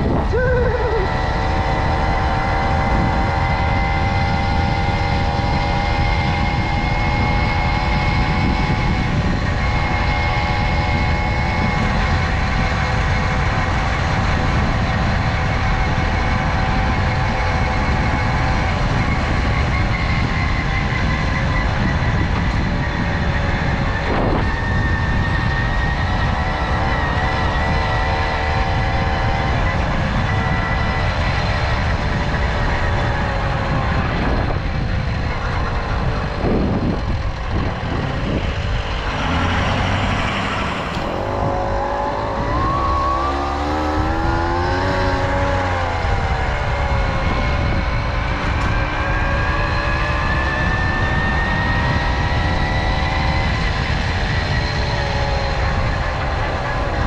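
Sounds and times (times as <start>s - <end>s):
moped engine running: 0.0s - 57.0s
wind and road rumble: 0.0s - 57.0s.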